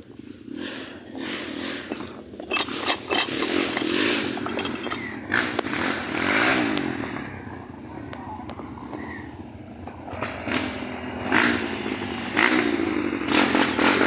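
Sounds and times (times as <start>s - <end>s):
small motorcycle engine revving: 0.2s - 14.0s
sharp knocks and rattles: 1.6s - 6.8s.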